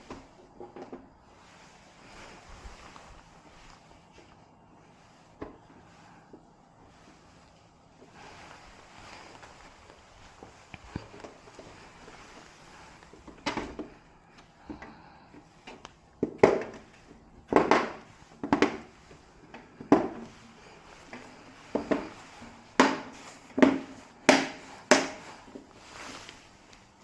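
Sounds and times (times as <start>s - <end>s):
objects knocking and clunking: 0.0s - 1.2s, 10.4s - 25.7s.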